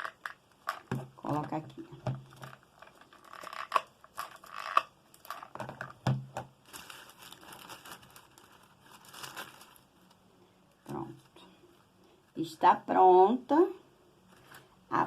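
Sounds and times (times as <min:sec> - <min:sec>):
paper being crumpled: 0:06.6 - 0:10.1.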